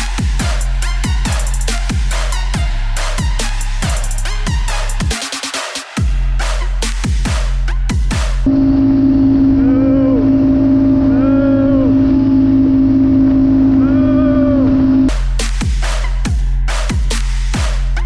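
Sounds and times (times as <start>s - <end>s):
steady hum: 8.4s - 15.2s
engine revving: 8.4s - 16.9s.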